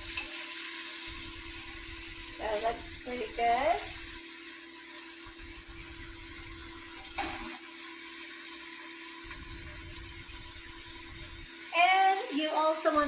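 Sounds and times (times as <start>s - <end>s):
chicken sizzling in a pan: 0.0s - 13.0s
low steady hum: 9.2s - 13.0s.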